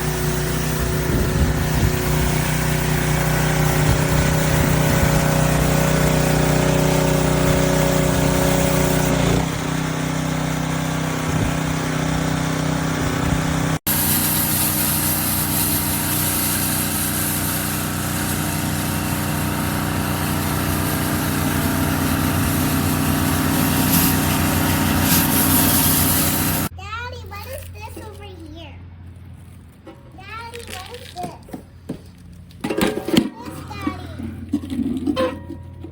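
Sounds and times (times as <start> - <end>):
small gas engine running: 0.0 - 26.7
spray hissing: 13.9 - 26.7.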